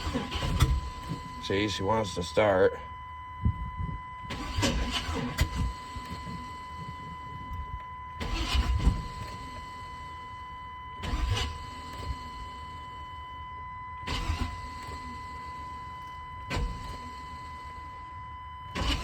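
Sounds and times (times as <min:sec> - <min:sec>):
starter motor cranking engine: 0:00.0 - 0:02.3, 0:04.3 - 0:06.4, 0:08.2 - 0:09.2, 0:11.0 - 0:11.8, 0:14.1 - 0:15.1, 0:18.8 - 0:19.0.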